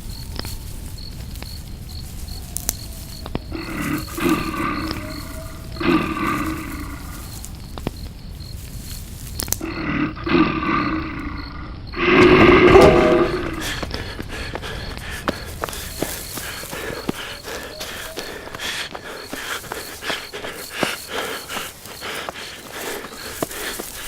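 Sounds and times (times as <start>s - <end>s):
faint regular chirps: 0.1s - 24.0s
wild animal roaring: 3.5s - 7.4s, 9.6s - 13.7s.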